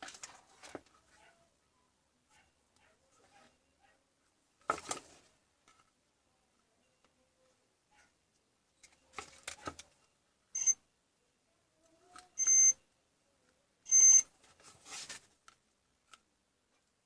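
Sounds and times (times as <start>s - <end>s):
clicks and handling noise: 0.0s - 1.4s, 4.6s - 6.0s, 8.0s - 10.2s, 14.4s - 17.0s
short electronic beeps: 10.6s - 10.8s, 12.4s - 12.8s, 13.9s - 14.3s.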